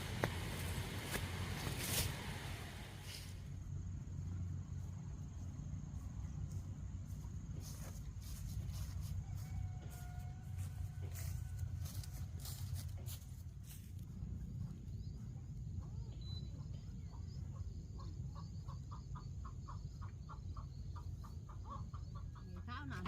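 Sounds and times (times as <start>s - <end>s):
steady low rumble: 0.0s - 9.2s
chickens clucking: 15.8s - 23.0s.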